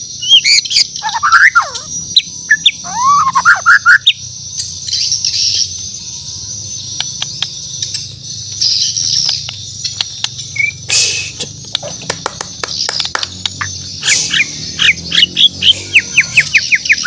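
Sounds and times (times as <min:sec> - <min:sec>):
bird singing rapid chattering notes: 0:00.0 - 0:17.0
harsh rasping bird call: 0:02.8 - 0:04.1, 0:14.0 - 0:17.0.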